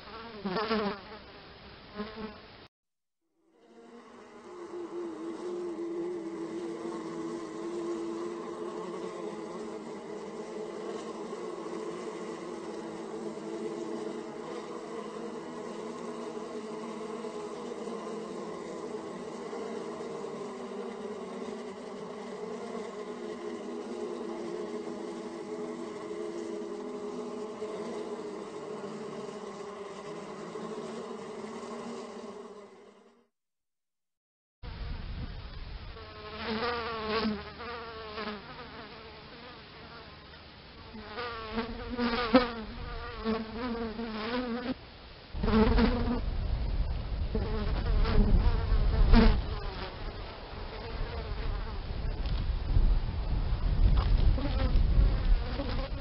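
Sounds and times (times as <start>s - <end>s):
bees buzzing: 3.5s - 33.2s.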